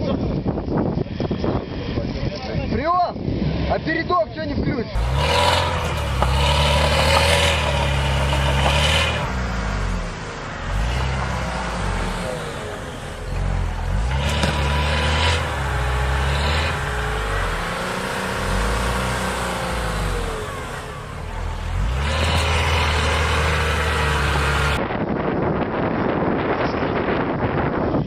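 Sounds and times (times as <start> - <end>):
off-road engine revving: 4.9 - 24.8.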